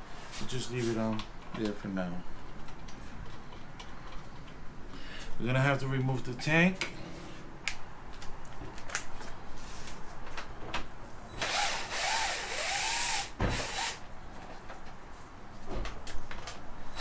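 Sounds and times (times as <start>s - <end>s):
drill clicks: 11.4s - 14.0s
drill motor whirring: 11.4s - 14.0s.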